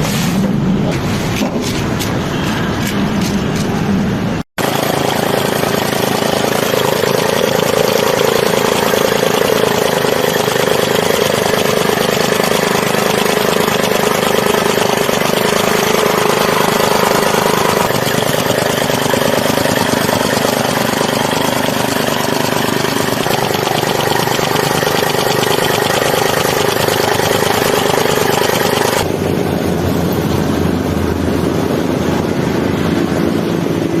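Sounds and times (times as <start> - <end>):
construction machinery engines running: 0.0 - 34.0.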